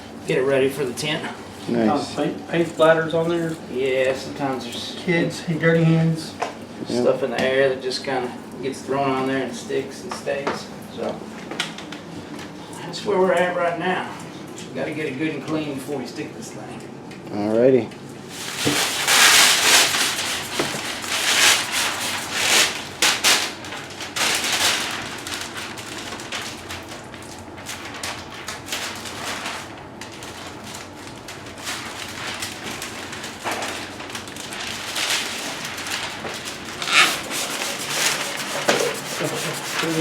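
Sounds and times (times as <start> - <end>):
plastic film rustling and crackling: 18.2 - 40.0.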